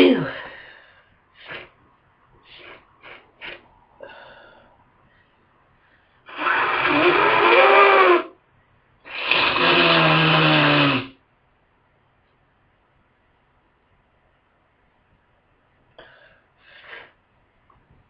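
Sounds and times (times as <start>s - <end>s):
honking nose blows: 6.3s - 8.4s, 9.1s - 11.2s.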